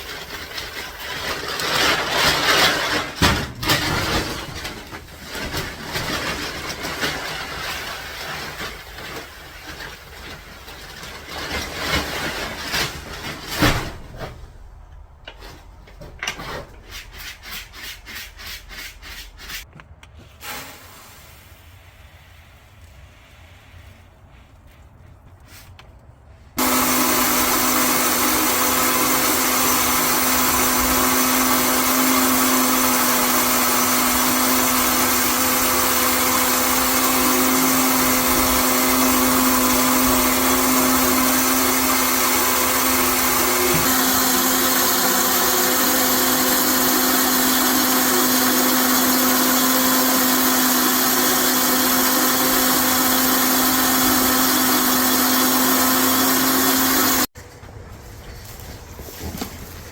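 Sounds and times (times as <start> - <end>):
motor-driven machine whirring: 26.6 - 57.3.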